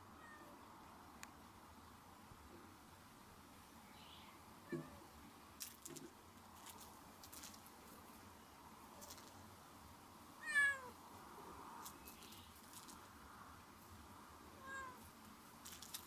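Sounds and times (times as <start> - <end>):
cat meowing: 10.4 - 11.0, 14.6 - 15.0.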